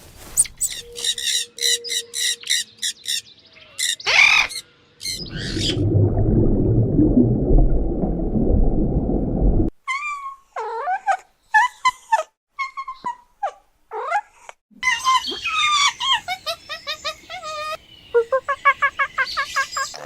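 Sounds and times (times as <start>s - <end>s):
low rumbling noise: 5.2s - 9.7s.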